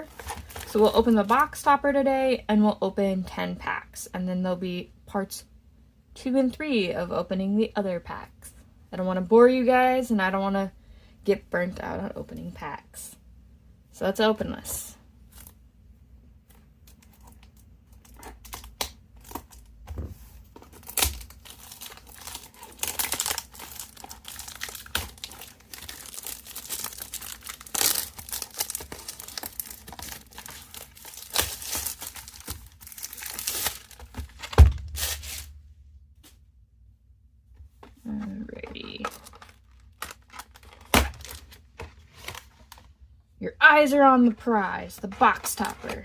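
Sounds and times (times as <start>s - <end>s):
plastic wrap tearing and crinkling: 0.0s - 1.4s, 20.5s - 35.6s, 38.8s - 42.9s
heavy thump: 34.5s - 35.0s.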